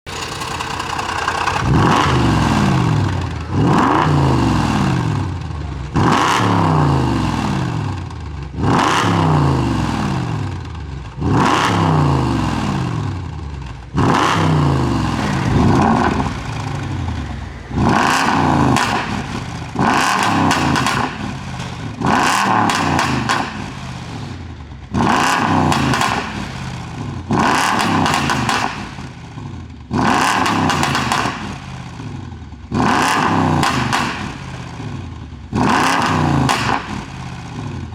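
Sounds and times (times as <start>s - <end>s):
exhaust pops and crackles: 0.1s - 6.8s, 13.6s - 29.2s
car engine revving: 0.1s - 37.9s.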